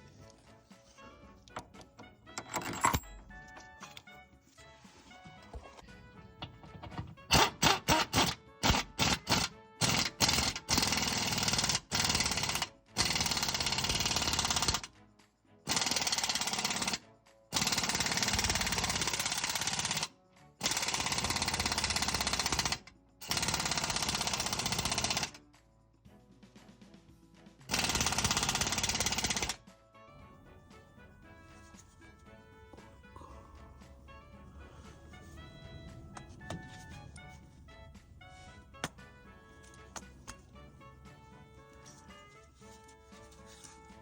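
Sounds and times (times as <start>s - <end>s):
impact wrench hammering: 27.8s - 29.6s.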